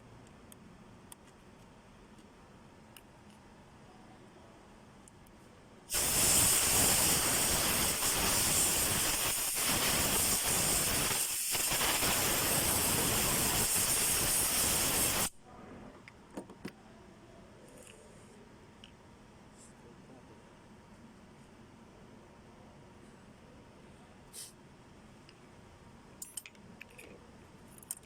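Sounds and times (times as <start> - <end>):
loud steady hiss: 5.9 - 15.4.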